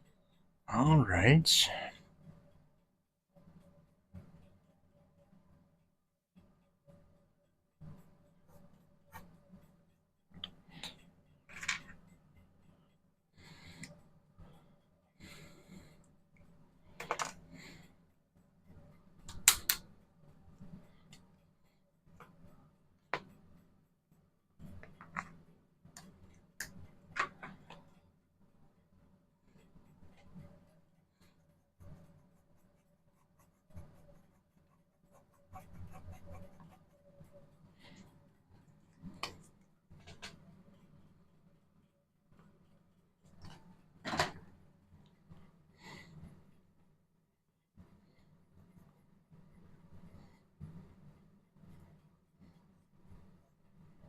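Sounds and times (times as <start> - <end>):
paintbrush scratching on surface: 29.5 - 39.6
brush scrubbing on canvas: 29.6 - 38.2.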